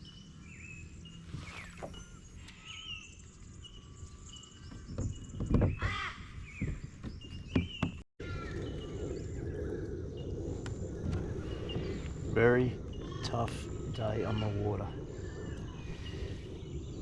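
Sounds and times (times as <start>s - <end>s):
wild birds whistling and pinging: 0.0s - 17.0s
steady low rumble: 8.2s - 17.0s.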